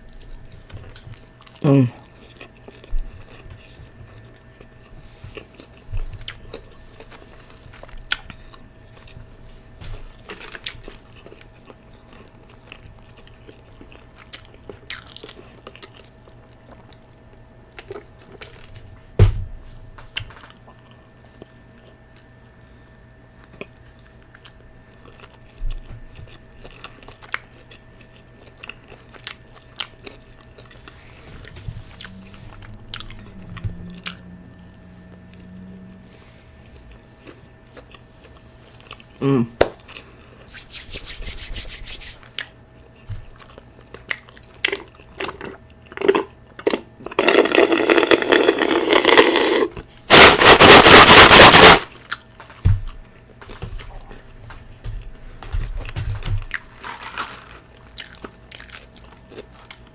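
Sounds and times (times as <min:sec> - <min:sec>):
chewing and lip smacking: 0:00.0 - 0:09.2, 0:26.2 - 0:31.0, 0:42.3 - 0:49.3, 0:58.0 - 0:59.9
faint steady hum: 0:00.0 - 0:59.9.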